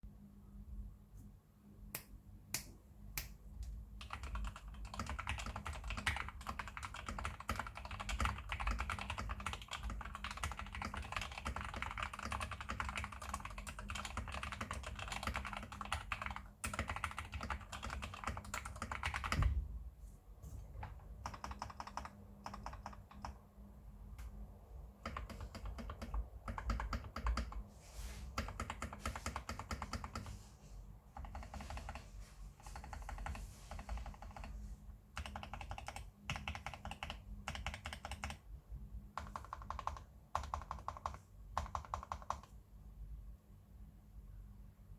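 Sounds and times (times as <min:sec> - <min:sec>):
typing on computer keyboard: 0:04.0 - 0:19.5, 0:20.8 - 0:23.4, 0:25.0 - 0:27.6, 0:28.4 - 0:30.3, 0:31.2 - 0:32.0, 0:32.7 - 0:34.5, 0:35.2 - 0:38.4, 0:39.2 - 0:42.5.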